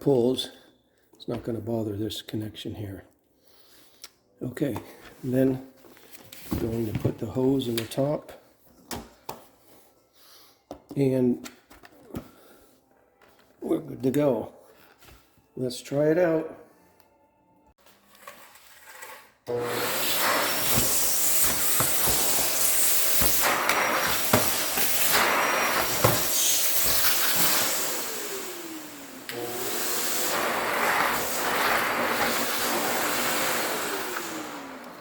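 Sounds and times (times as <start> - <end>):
vacuum cleaner running: 19.5 - 35.0.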